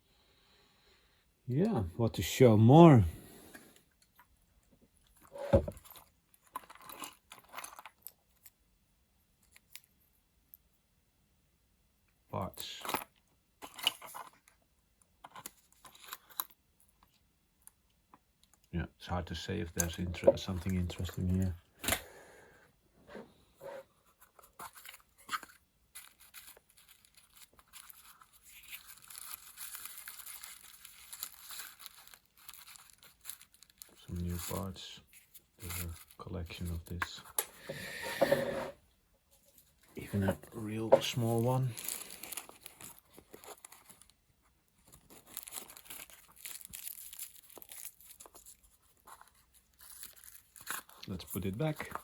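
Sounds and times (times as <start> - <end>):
packets rustling and crinkling: 23.6 - 38.8, 39.4 - 52.0.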